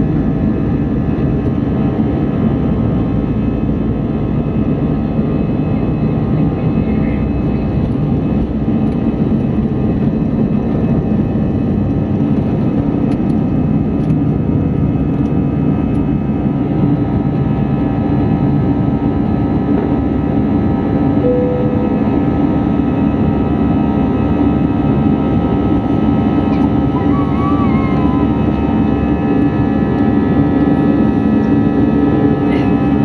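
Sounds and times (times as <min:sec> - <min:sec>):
airliner cabin engine rush: 0:00.0 - 0:33.0
steady humming tones: 0:16.0 - 0:33.0.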